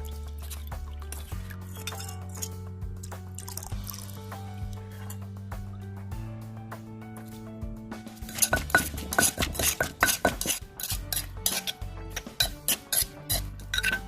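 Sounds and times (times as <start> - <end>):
background music: 0.0 - 14.0
utensil scraping cooking pot: 0.4 - 2.6, 8.2 - 14.0.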